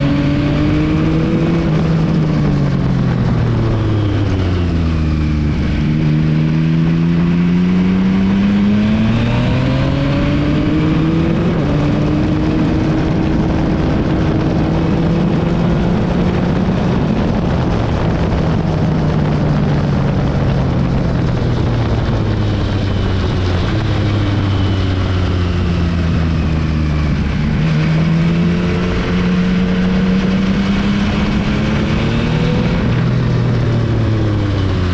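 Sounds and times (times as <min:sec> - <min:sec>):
motorcycle engine revving: 0:00.0 - 0:34.9.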